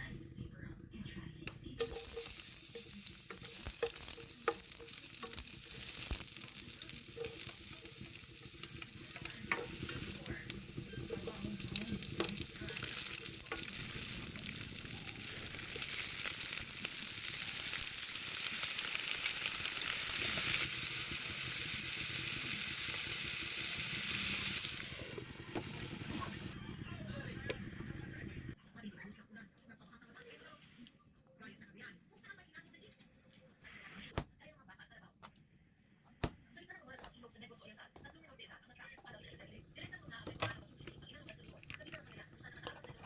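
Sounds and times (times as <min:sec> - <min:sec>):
food sizzling in a pan: 0:01.8 - 0:26.6
utensil stirring in a pan: 0:01.8 - 0:26.6, 0:39.2 - 0:43.0.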